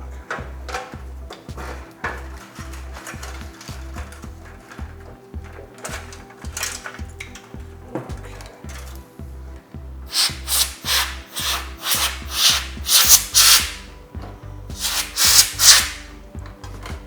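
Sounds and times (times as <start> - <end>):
canned air blowing bursts: 10.1 - 13.9, 14.7 - 16.2.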